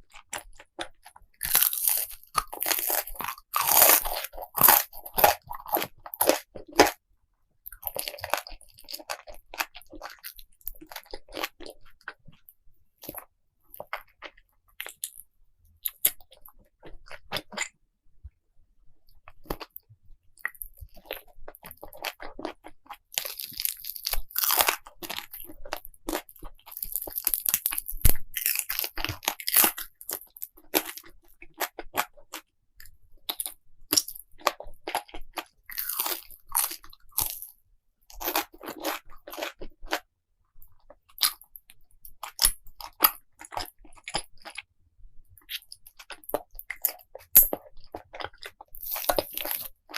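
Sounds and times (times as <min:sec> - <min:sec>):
person chewing and crunching food: 0:00.0 - 0:07.0, 0:07.6 - 0:17.8, 0:19.1 - 0:49.9.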